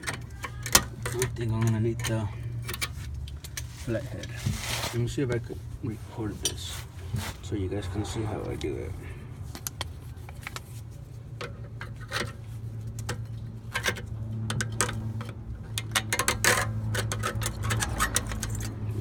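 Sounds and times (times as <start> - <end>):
low hum: 6.9 - 11.2
screwdriver clicking and scraping metal: 11.4 - 19.0.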